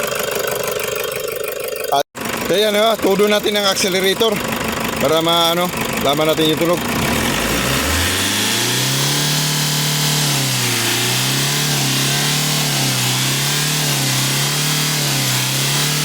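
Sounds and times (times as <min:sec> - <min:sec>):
diesel engine revving high: 0:06.0 - 0:16.0.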